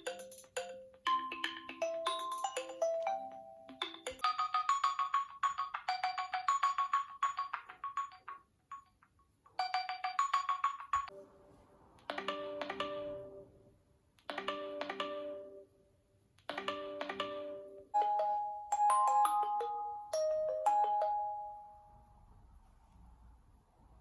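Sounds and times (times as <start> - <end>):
electronic beeping ringtone melody: 0.0 - 5.2, 12.1 - 13.5, 14.3 - 15.6, 16.5 - 22.0
chime-like ringtone notes: 0.0 - 8.9, 12.1 - 13.6, 14.3 - 15.7, 16.5 - 22.2.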